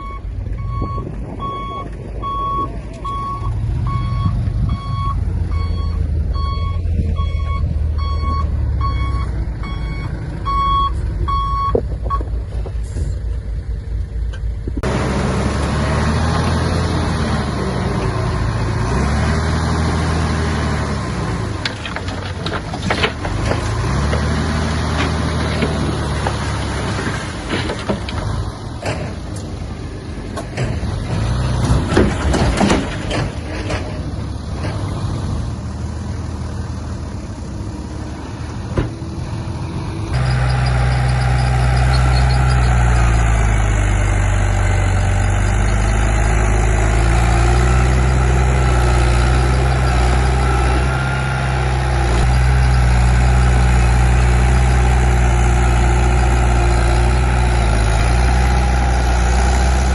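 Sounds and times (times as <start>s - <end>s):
reversing alarm beeping: 0.0s - 12.2s
diesel engine revving: 0.0s - 59.9s
metal clanks and knocks: 21.6s - 29.6s, 30.3s - 34.9s.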